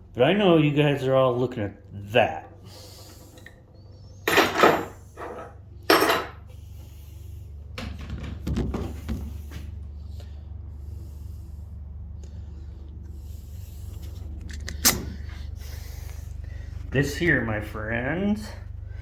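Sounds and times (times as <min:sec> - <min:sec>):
hand tools clanking and knocking: 0:04.2 - 0:06.4.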